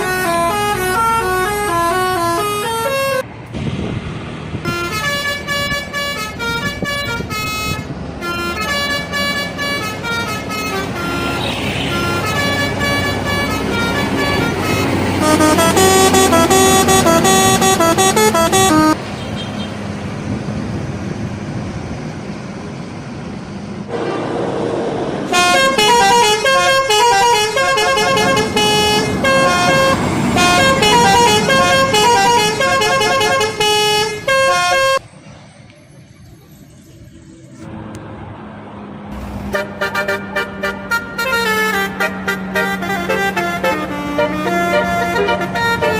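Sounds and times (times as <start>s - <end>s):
multi-tone musical bus horn: 0.0s - 3.2s, 4.6s - 19.8s, 25.3s - 35.0s, 39.3s - 45.9s
engine and traffic noise: 0.0s - 45.9s.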